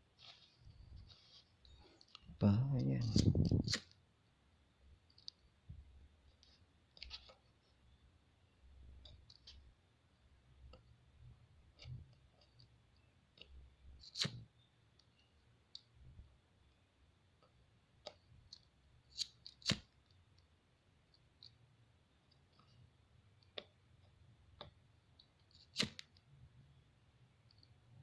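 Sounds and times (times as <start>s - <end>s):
small parts clicking and tapping: 5.1s - 5.5s.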